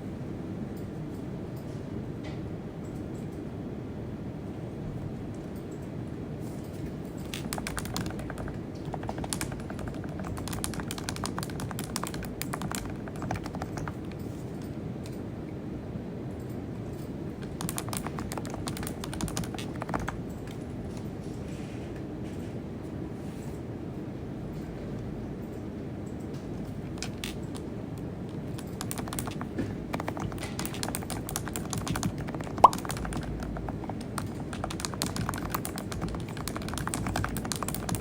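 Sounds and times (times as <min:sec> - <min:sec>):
steady low hum: 0:00.0 - 0:38.0
typing on computer keyboard: 0:06.6 - 0:15.2, 0:16.4 - 0:21.1, 0:25.4 - 0:38.0.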